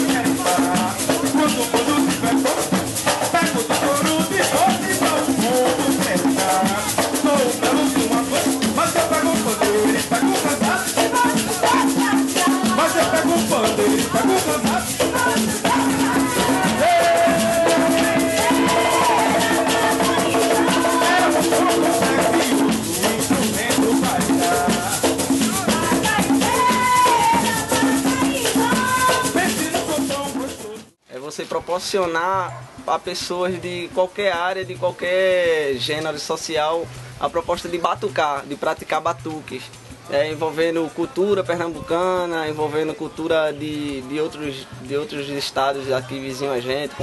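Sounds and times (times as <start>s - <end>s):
gliding melody line: 0.0s - 30.8s
shaker rattling: 0.0s - 35.1s, 35.8s - 47.0s
drums: 0.0s - 47.0s.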